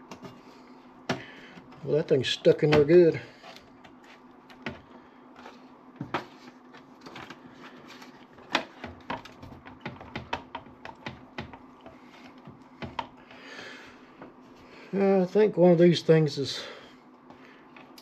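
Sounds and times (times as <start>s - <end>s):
clicks and knocks inside computer case: 4.6s - 4.9s, 8.4s - 11.7s, 12.4s - 13.2s.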